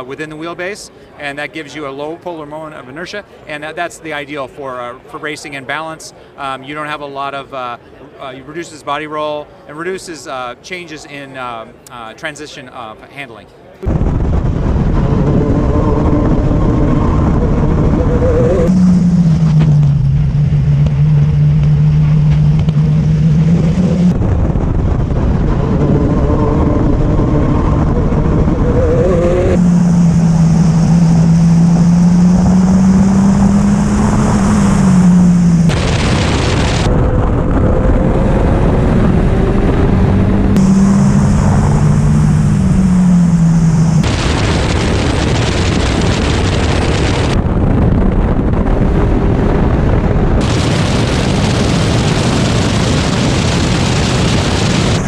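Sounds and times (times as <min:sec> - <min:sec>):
race car engine running hard: 0:14.4 - 0:47.5, 0:49.9 - 0:55.0.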